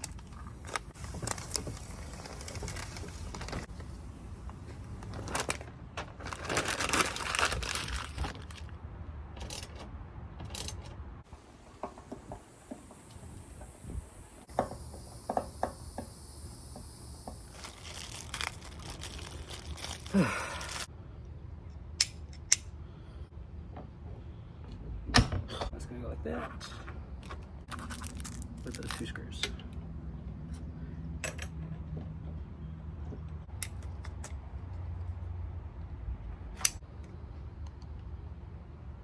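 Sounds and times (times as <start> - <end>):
plastic film peeling and crinkling: 0.0 - 3.9, 4.6 - 8.8, 17.4 - 20.9, 27.7 - 29.1.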